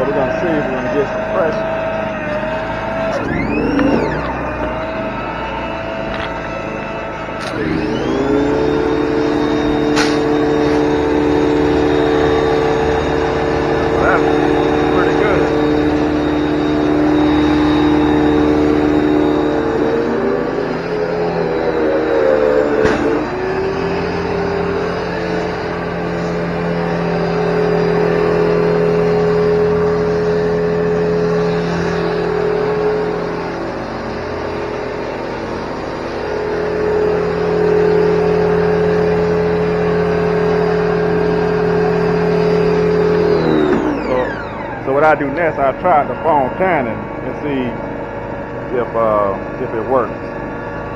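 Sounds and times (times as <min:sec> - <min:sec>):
portable generator running: 0:00.0 - 0:50.9
pressure washer whining: 0:00.0 - 0:50.9
sharp click: 0:10.0 - 0:10.8.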